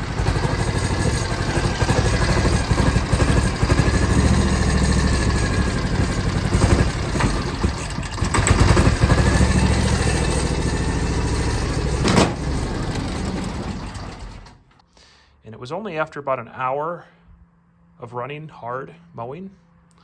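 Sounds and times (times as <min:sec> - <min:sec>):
misfiring engine running: 0:00.0 - 0:14.8.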